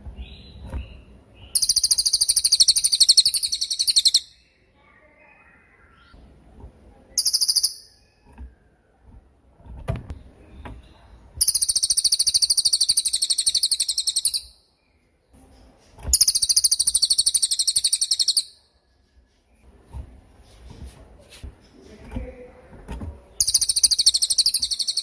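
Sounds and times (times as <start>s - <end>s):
songbird trilling: 0.2s - 4.5s, 7.2s - 8.2s, 11.4s - 14.6s, 16.1s - 18.6s, 23.4s - 25.0s.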